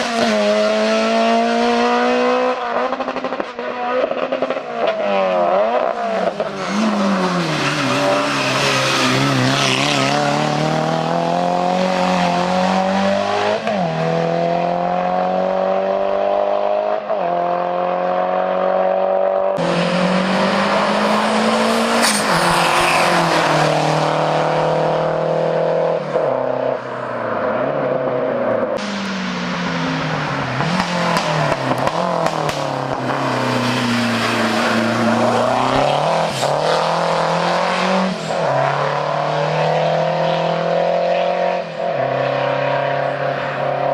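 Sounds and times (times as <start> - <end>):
race car engines accelerating: 0.0 - 43.9.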